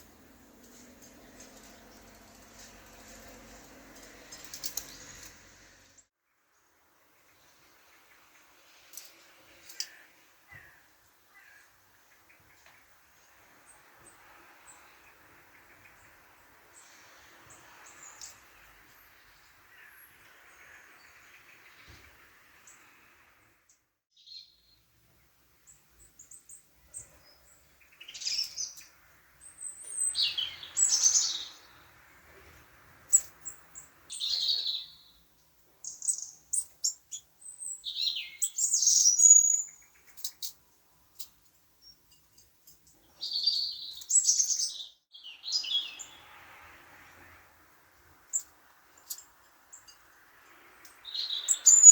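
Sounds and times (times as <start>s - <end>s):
robin singing: 24.1s - 24.9s, 25.7s - 32.0s, 33.1s - 40.6s, 41.8s - 46.3s, 48.2s - 51.9s.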